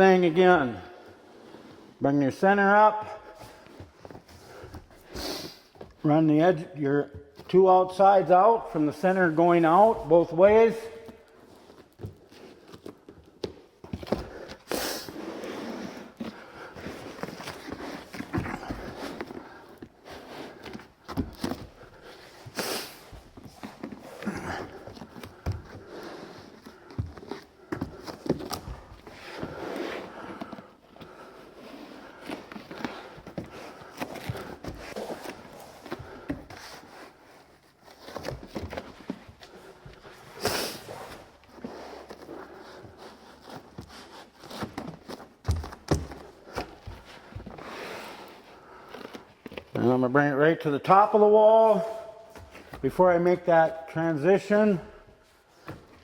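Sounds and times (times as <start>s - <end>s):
rubber sheet rustling: 7.3s - 50.0s.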